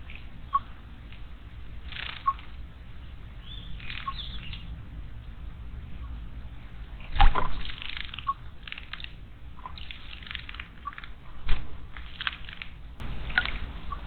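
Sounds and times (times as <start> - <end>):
small birds chirping: 1.9 - 4.7, 13.0 - 14.0
wingbeats and splashing: 12.1 - 14.0
water dripping into basin: 13.0 - 14.0.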